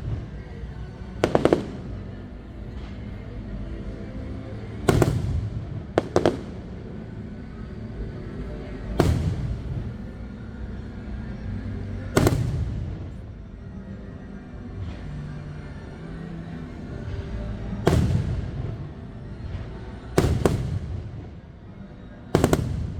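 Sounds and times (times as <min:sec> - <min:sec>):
music playing: 0:00.0 - 0:22.9
fireworks bangs: 0:01.2 - 0:02.1, 0:04.8 - 0:06.8, 0:09.0 - 0:10.1, 0:12.1 - 0:13.2, 0:17.0 - 0:21.4, 0:22.3 - 0:22.9.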